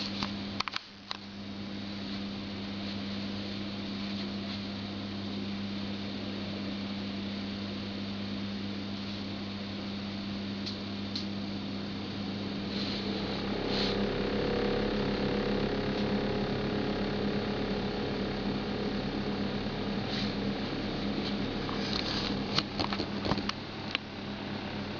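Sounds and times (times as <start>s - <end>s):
refrigerator humming: 0.0s - 24.9s
higher drone and low rumble: 11.8s - 24.9s.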